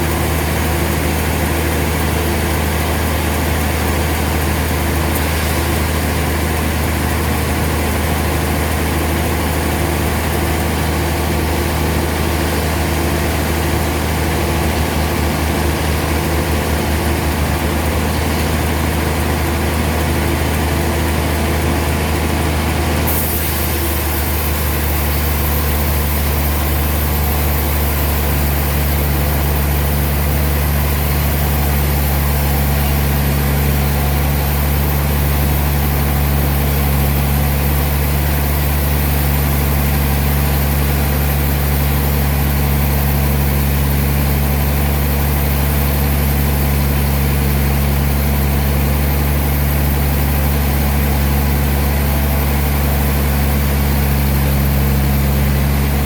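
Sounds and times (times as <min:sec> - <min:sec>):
sawmill machinery humming: 0:00.0 - 0:56.0.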